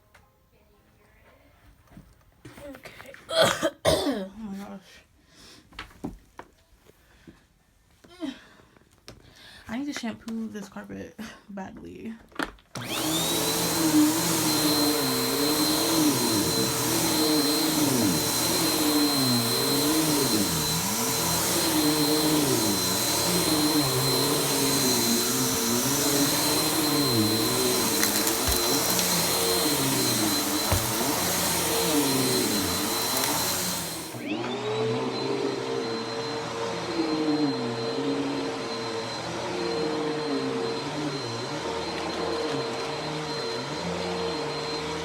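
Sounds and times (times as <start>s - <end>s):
vacuum cleaner running: 12.8s - 45.0s.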